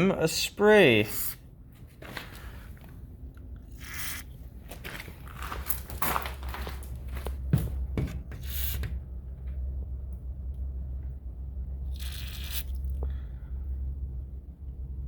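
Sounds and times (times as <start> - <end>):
steady low hum: 0.0 - 15.0
aerosol can spraying: 8.4 - 8.8, 12.0 - 12.8.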